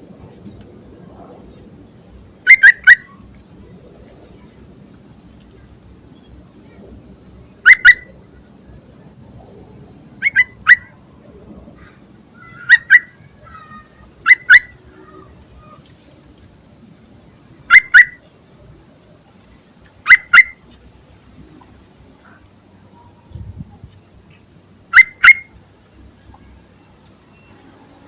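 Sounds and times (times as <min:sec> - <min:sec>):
bird calling in sharp notes: 0:02.4 - 0:03.3, 0:07.5 - 0:08.2, 0:10.2 - 0:11.0, 0:12.3 - 0:15.8, 0:17.3 - 0:18.3, 0:20.0 - 0:20.7, 0:24.1 - 0:25.6.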